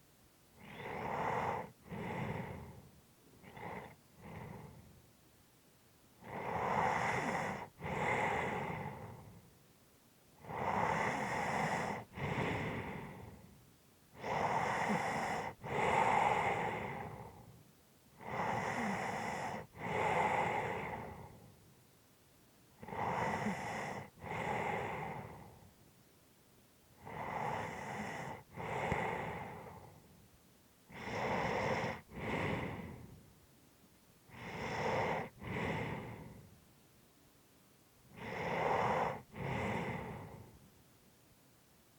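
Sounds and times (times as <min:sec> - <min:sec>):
person breathing heavily in sleep: 0:00.6 - 0:05.0, 0:06.2 - 0:09.5, 0:10.4 - 0:17.6, 0:18.2 - 0:21.6, 0:22.8 - 0:25.8, 0:27.0 - 0:30.2, 0:30.9 - 0:33.3, 0:34.3 - 0:36.6, 0:38.1 - 0:40.6.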